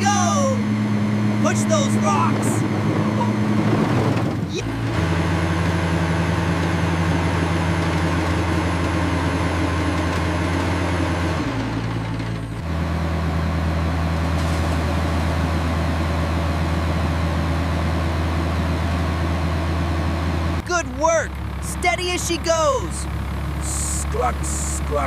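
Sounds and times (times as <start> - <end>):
bulldozer engine droning: 0.0 - 25.0.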